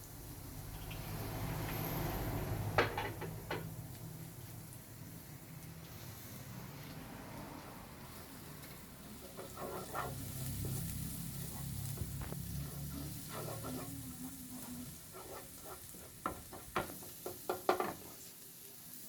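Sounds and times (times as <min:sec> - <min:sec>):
garlic sizzling in butter: 0:08.1 - 0:19.0.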